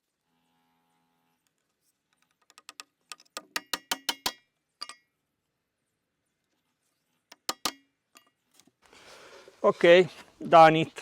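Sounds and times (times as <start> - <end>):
wooden panels knocking together: 2.3 - 4.4, 7.3 - 7.8.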